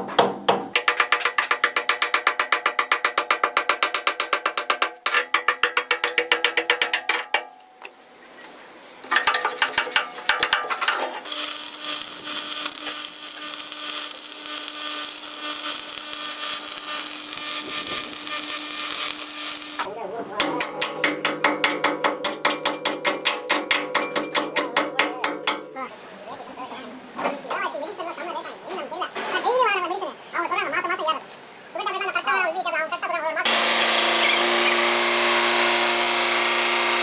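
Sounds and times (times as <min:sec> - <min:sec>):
metalworking noise with low hum: 0:00.1 - 0:25.9, 0:33.5 - 0:37.0
hammer blows on steel: 0:00.8 - 0:07.5.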